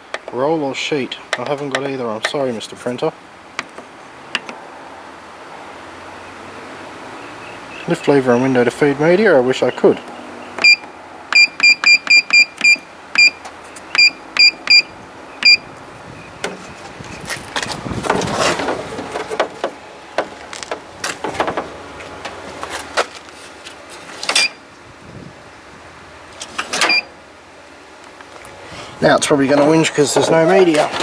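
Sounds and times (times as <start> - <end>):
clicks and clunks: 1.3 - 2.4, 16.4 - 24.6, 26.4 - 27.1
keypad beeps: 10.6 - 15.6.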